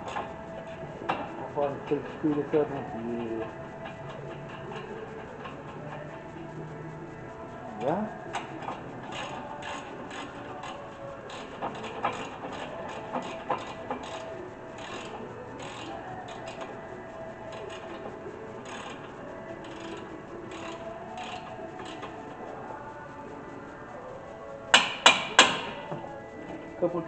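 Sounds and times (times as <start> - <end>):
ratchet wrench clicking: 8.3 - 16.7, 17.5 - 22.1.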